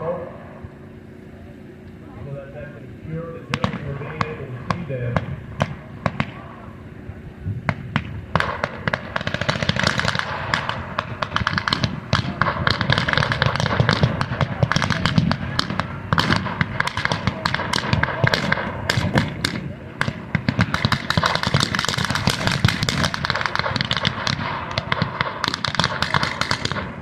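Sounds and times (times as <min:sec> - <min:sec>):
blank gunfire: 0:07.7 - 0:27.0.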